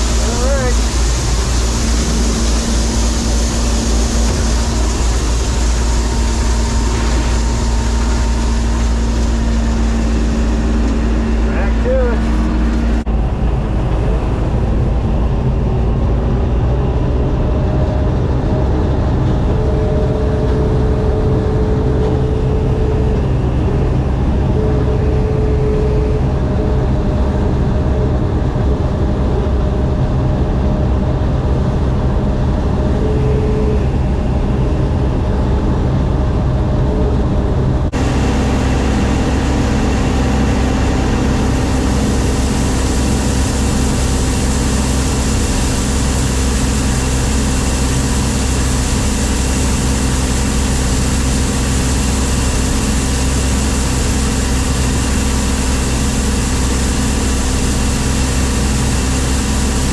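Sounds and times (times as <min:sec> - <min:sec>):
diesel engine running under load: 0:00.0 - 0:59.9.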